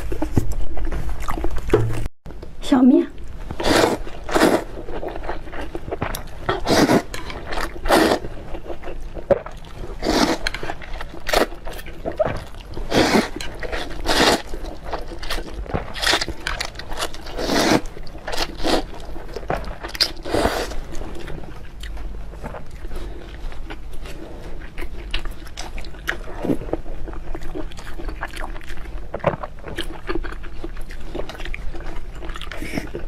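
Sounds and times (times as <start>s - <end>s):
eating bites and chewing: 3.6s - 33.0s
slurping: 6.5s - 8.3s, 10.0s - 11.5s.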